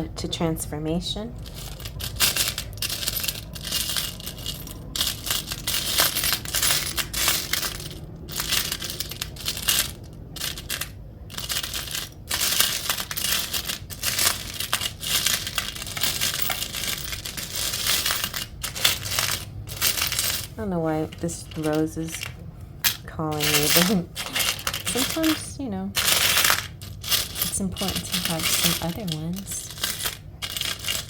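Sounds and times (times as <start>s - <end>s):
metal charms rattling and clinking: 1.4s - 31.0s.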